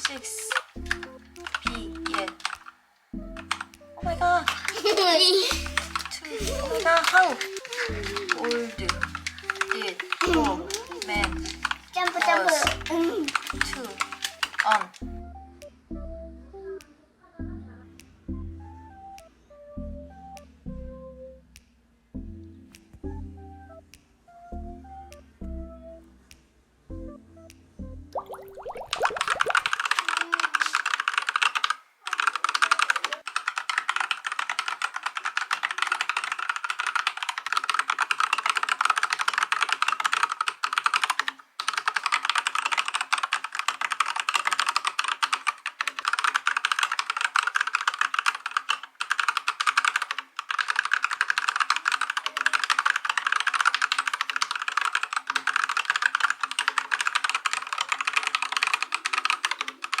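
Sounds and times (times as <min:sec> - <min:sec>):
mechanical keyboard typing: 0:00.0 - 0:15.0, 0:28.2 - 1:00.0.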